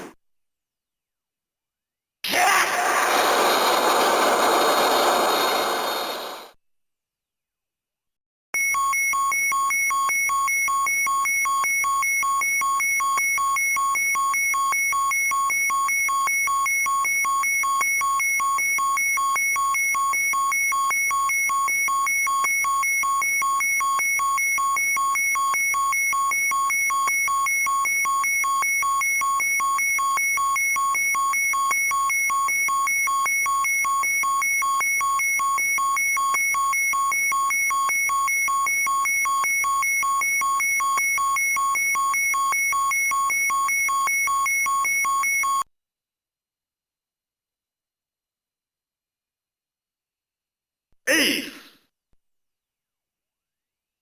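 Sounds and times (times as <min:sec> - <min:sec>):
rapidly pulsing toy beeping: 0:02.4 - 0:06.5.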